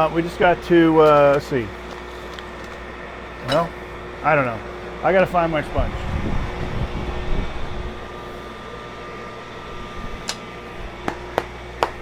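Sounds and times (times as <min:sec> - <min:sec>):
steady background hum: 0:00.0 - 0:12.0
handling knocks and rustling: 0:01.0 - 0:03.8.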